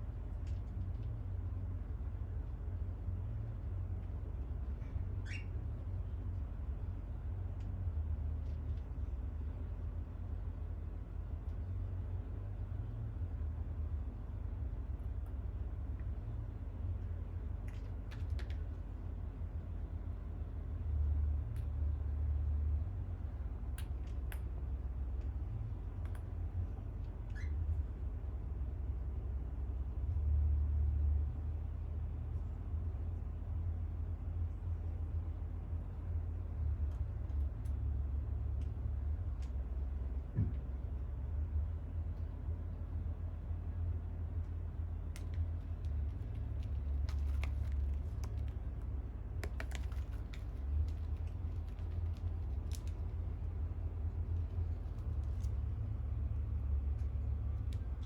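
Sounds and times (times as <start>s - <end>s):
low rumble: 0.0s - 58.0s
parrot toys clicking and tapping: 45.1s - 53.2s.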